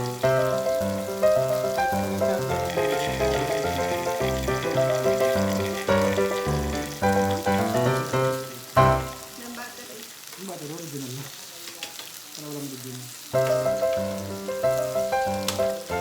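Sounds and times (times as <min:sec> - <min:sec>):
background music: 0:00.0 - 0:09.4
meat sizzling on grill: 0:00.0 - 0:16.0.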